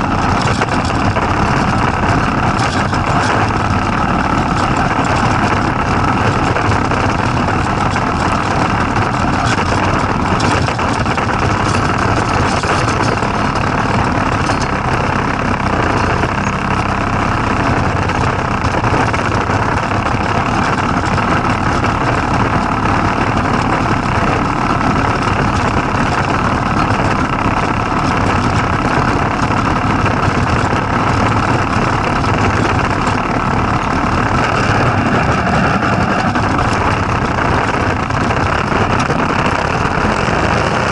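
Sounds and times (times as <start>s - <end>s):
small engine running steadily: 0.0s - 40.9s.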